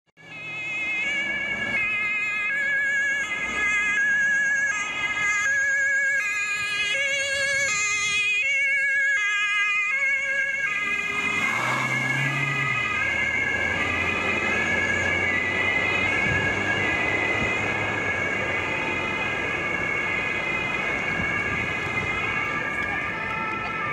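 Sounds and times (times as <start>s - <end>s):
car engine accelerating: 0.2s - 2.3s, 10.5s - 23.9s
two-tone police siren: 0.2s - 23.9s.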